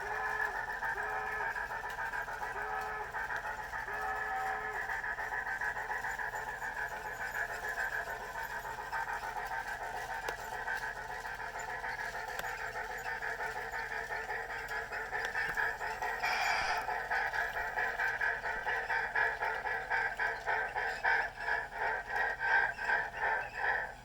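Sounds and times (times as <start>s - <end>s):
steam exhaust chuffs through speaker: 0.0s - 12.2s.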